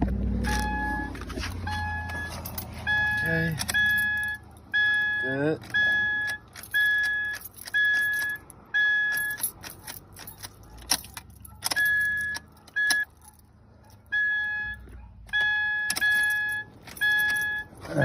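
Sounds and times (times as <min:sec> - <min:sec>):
car warning chime beeping: 0:00.4 - 0:09.6, 0:11.2 - 0:13.2, 0:14.0 - 0:18.0
keys jangling: 0:02.0 - 0:04.7, 0:05.6 - 0:14.0, 0:15.9 - 0:18.0.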